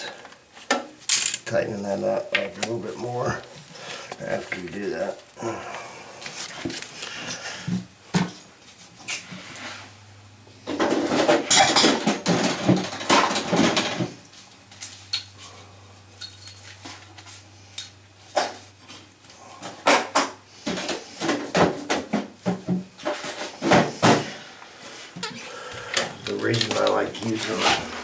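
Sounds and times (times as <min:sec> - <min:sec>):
tools knocking and clattering: 0:10.7 - 0:14.1
rustling and rattling: 0:10.7 - 0:15.1.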